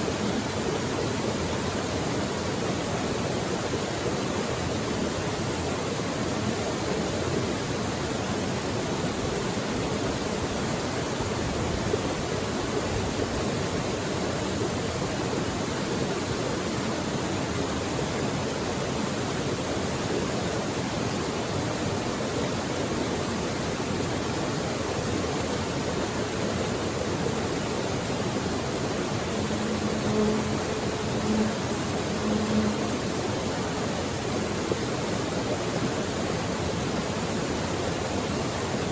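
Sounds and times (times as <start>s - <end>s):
creek water rushing: 0.0s - 38.9s
short low tones: 29.0s - 33.9s.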